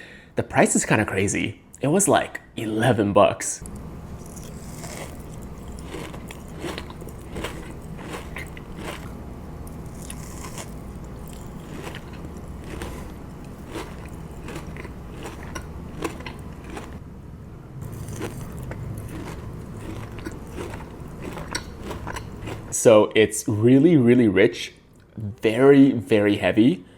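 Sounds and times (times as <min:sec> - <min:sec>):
low steady hum: 0:00.0 - 0:26.9
chewing crunchy food: 0:03.7 - 0:17.0, 0:17.8 - 0:22.8.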